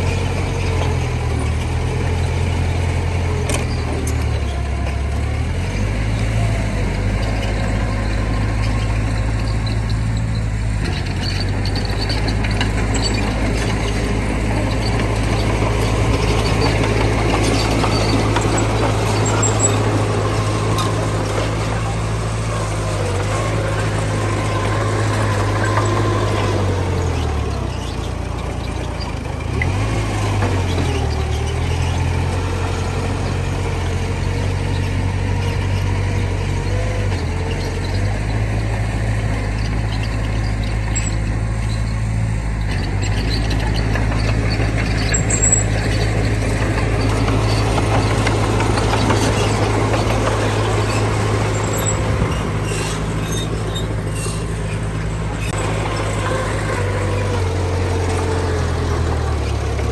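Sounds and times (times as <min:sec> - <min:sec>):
diesel engine running: 0:00.0 - 0:59.9
machinery squeaks and clicks: 0:00.0 - 0:59.9.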